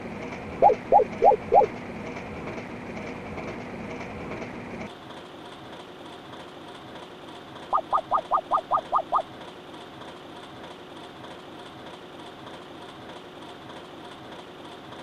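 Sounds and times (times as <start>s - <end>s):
train running noise: 0.0s - 15.0s
short rising chirps: 0.6s - 1.7s, 7.7s - 9.3s.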